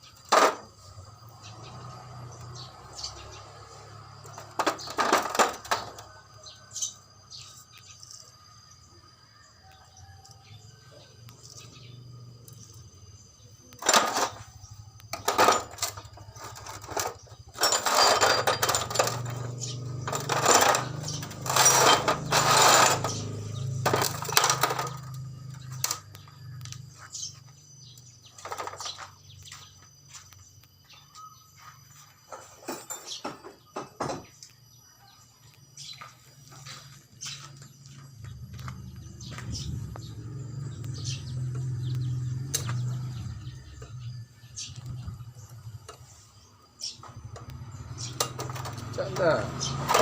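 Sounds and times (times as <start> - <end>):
metallic clattering and scraping: 3.9 - 6.2, 13.7 - 27.3, 28.3 - 29.6, 31.9 - 34.2.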